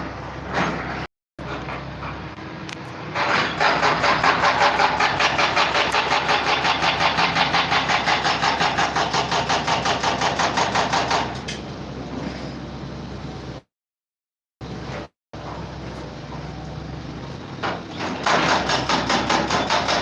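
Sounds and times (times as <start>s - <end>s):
machine noise pulsing rapidly: 3.0s - 11.0s.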